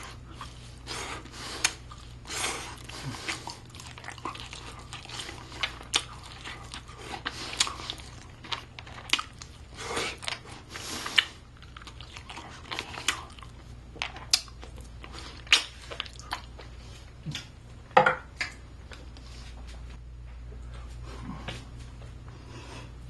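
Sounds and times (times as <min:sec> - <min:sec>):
person chewing chicken: 0:00.0 - 0:17.5.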